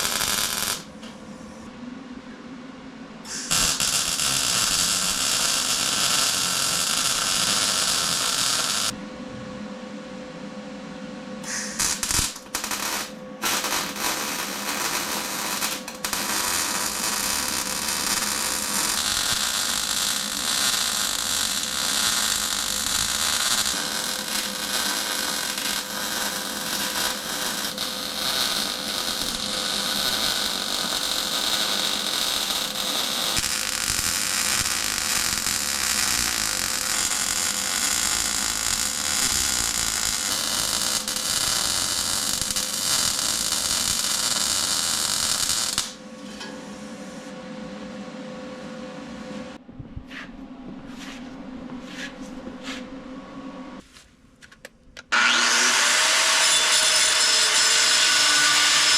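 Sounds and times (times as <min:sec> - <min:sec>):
power tool grinding metal: 0:55.1 - 0:58.9.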